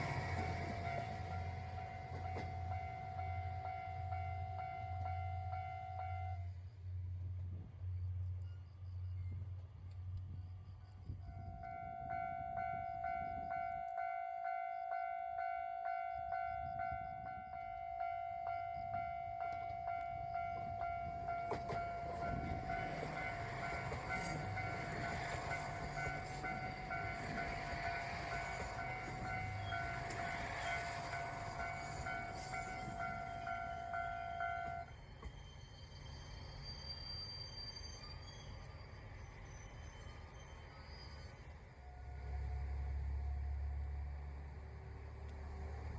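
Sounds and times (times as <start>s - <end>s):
level-crossing warning bell: 0.0s - 6.4s, 11.3s - 35.0s
train passing: 0.0s - 45.9s.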